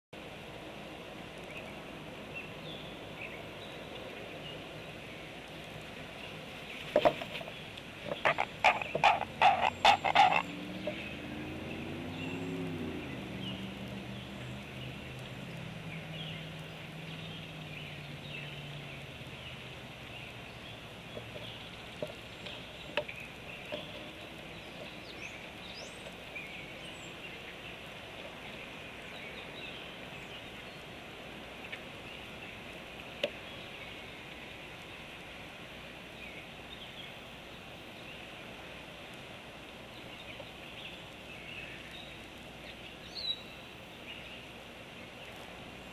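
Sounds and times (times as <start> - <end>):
bird clacking its bill: 8.1 - 11.0
bird grunting call: 8.1 - 11.1.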